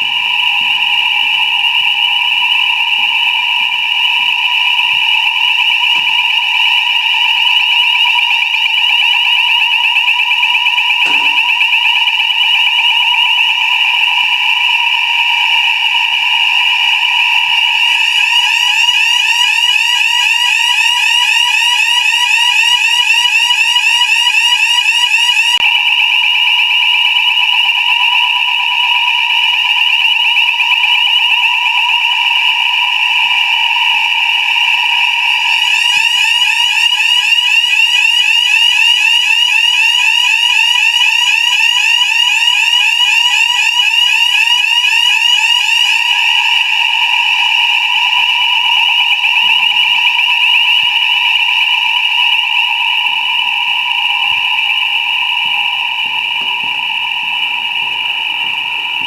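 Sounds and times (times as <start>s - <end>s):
fire alarm ringing: 10.6s - 11.9s, 16.8s - 25.6s, 34.8s - 49.3s
higher alarm ringing: 11.1s - 11.7s, 17.4s - 25.6s, 35.1s - 47.5s.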